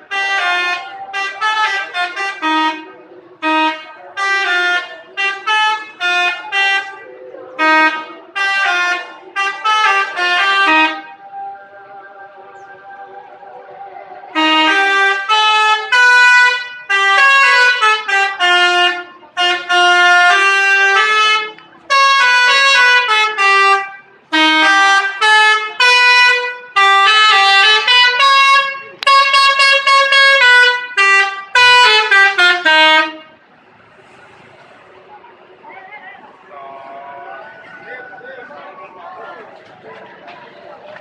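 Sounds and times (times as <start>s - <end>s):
musical air horn playing phrases: 0.0s - 12.6s, 14.3s - 33.4s.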